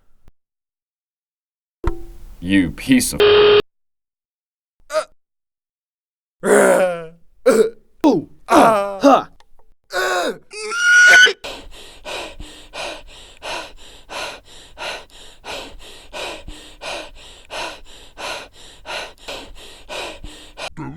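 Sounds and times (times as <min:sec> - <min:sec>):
person crying out: 0:06.4 - 0:09.3, 0:09.9 - 0:11.4
person yelling: 0:08.1 - 0:09.3, 0:09.9 - 0:11.4
person panting heavily: 0:11.4 - 0:20.7.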